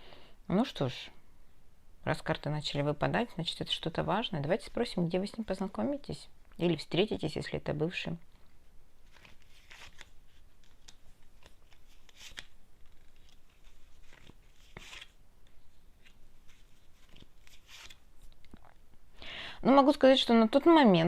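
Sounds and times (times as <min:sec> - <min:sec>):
cards being shuffled: 0:09.0 - 0:18.5.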